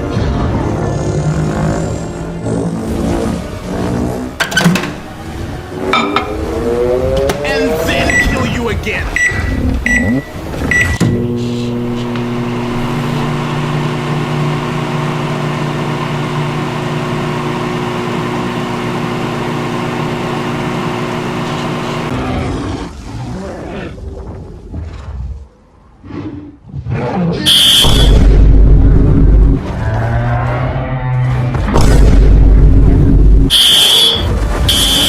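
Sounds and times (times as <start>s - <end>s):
short high beeps: 8.0s - 8.6s, 9.2s - 11.3s
machine hum with low buzz: 9.2s - 22.1s, 27.5s - 29.7s, 31.8s - 35.0s.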